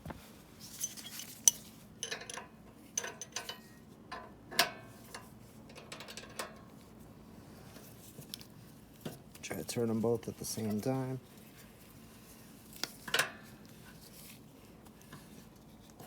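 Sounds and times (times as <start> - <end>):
metal tools clinking on bolts: 0.7 - 3.7.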